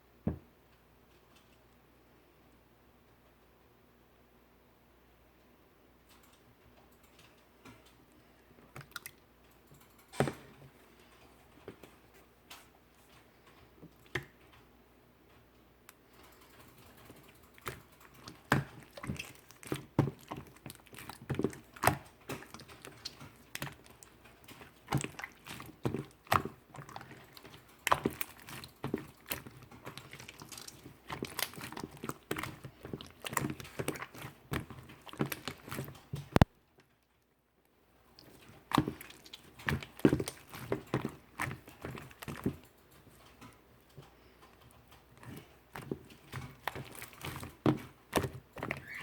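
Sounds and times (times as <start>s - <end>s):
slime squished by hand: 16.9s - 36.5s, 38.1s - 42.7s, 45.0s - 49.0s.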